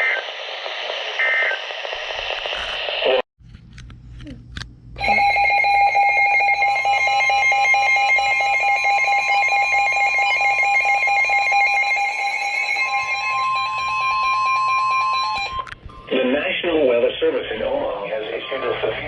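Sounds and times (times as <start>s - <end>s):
steady alarm tone: 5.0s - 16.8s.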